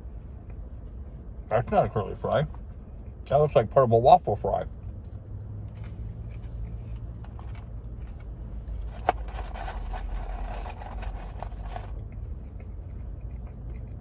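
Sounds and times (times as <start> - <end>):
low steady hum: 0.0 - 14.0
paper packaging rustling: 8.8 - 11.9.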